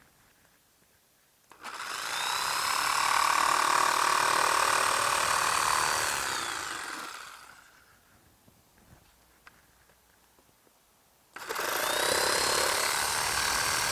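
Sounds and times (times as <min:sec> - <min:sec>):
power tool motor whining: 0:01.5 - 0:07.8, 0:11.4 - 0:13.9.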